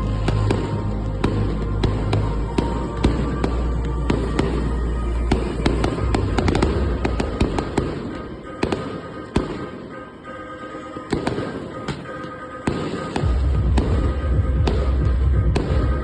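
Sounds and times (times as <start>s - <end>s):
fireworks popping and crackling: 0.0s - 9.9s, 11.1s - 16.0s
loud firework bangs: 11.1s - 16.0s
low rumble: 13.2s - 16.0s.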